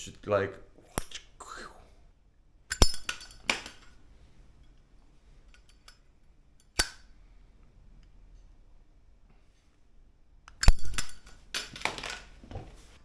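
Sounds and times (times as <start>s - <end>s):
lighter lid clicking: 1.0s - 1.2s, 2.7s - 3.9s, 6.6s - 7.1s, 10.5s - 11.2s.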